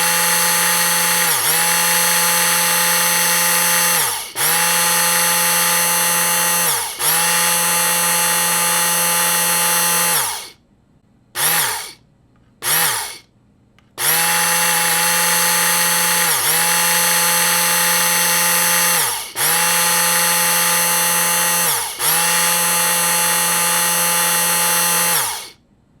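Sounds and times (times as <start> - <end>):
food blender motor whining: 0.0 - 10.6, 11.4 - 12.0, 12.6 - 13.2, 14.0 - 25.6.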